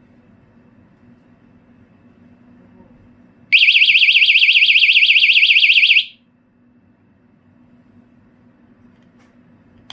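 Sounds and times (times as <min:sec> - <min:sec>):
window alarm shrieking: 0:03.6 - 0:06.2.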